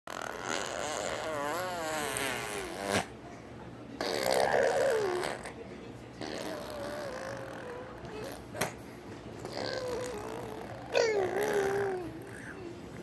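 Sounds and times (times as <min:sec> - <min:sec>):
baby vocalising funny noises: 0:00.1 - 0:03.1, 0:04.0 - 0:05.5, 0:06.2 - 0:08.7, 0:09.5 - 0:12.7.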